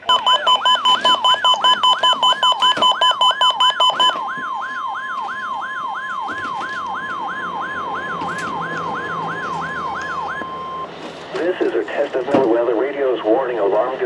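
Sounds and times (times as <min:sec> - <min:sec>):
pulsing beep: 0:00.0 - 0:04.2
alarm siren sweeping down: 0:00.0 - 0:11.0
steady high warning tone: 0:00.0 - 0:14.0.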